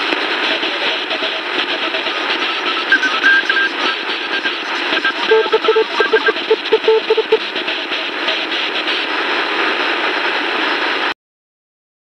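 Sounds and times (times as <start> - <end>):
radio static hiss: 0.0 - 11.2
short even radio beeps: 1.7 - 7.4.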